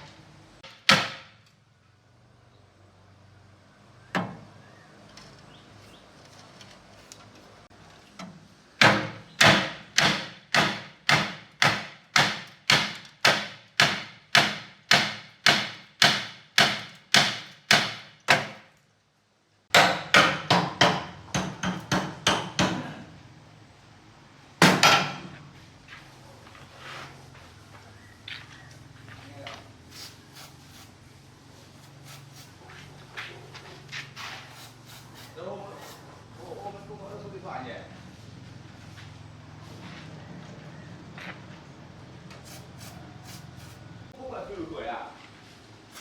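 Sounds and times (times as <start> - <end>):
hammer striking wood: 0.6 - 1.4, 8.8 - 18.7, 19.7 - 23.0, 24.6 - 25.4.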